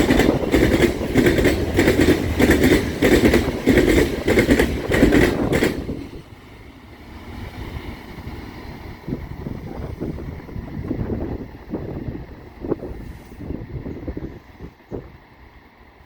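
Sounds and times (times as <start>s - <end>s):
freight wheels clattering over rail joints: 0.0s - 6.2s.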